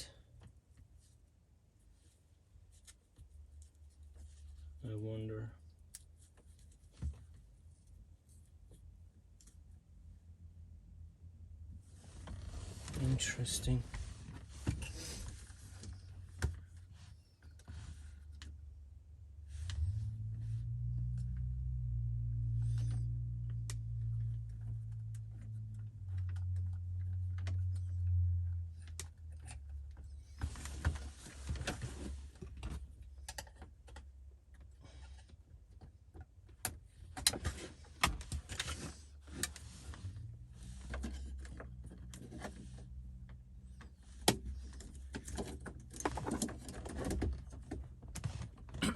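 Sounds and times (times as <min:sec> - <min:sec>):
low hum: 0:19.2 - 0:30.4.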